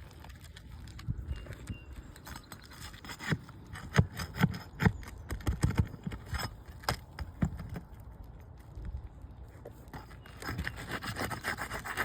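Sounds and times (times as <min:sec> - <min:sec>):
shingles scraping: 0:01.5 - 0:07.9, 0:09.6 - 0:12.0
sharp knocks and clicks: 0:02.4 - 0:07.9.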